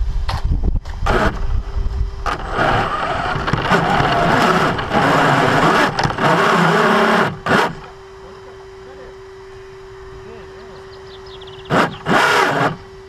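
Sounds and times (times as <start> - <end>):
electric motor whine: 0.0 - 13.0
toy truck drivetrain grinding: 2.2 - 8.0, 11.7 - 12.8.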